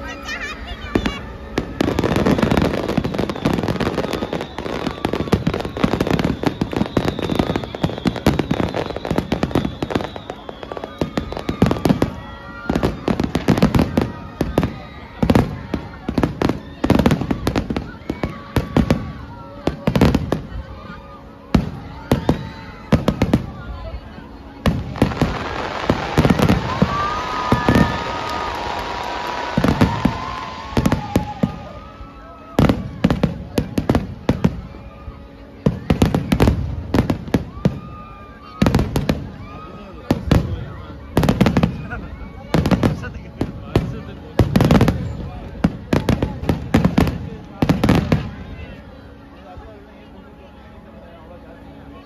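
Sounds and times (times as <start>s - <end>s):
fireworks bangs and crackling pops: 0.8s - 20.9s, 21.5s - 23.7s, 24.6s - 34.8s, 35.4s - 48.6s.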